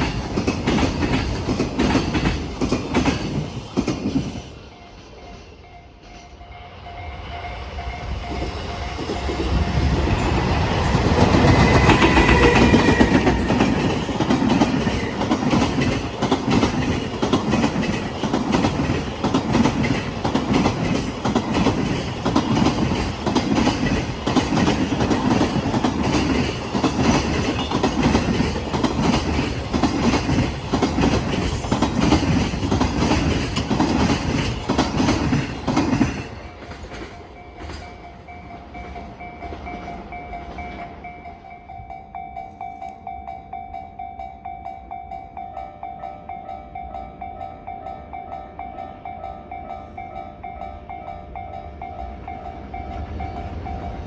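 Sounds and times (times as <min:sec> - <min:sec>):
train wheels clattering over rail joints: 0:00.0 - 0:04.6, 0:08.2 - 0:38.0.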